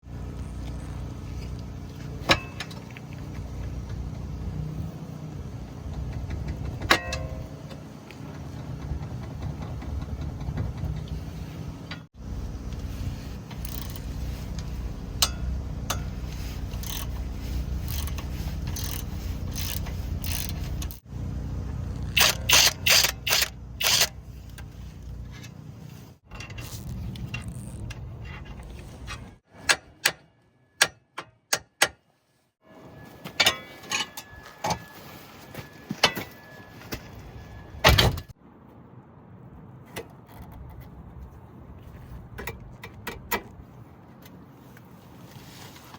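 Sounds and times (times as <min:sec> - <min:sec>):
car driving rumble: 0:00.0 - 0:29.4
suspension clunking over bumps: 0:00.0 - 0:30.0.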